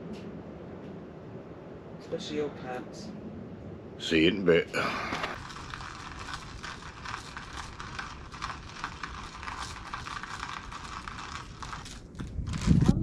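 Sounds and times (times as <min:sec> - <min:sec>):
wood fire crackling: 0:04.8 - 0:13.0.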